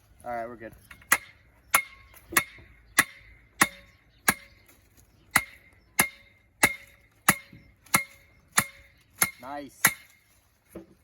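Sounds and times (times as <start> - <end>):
sledgehammer striking wooden post: 0.9 - 4.7, 5.3 - 11.0.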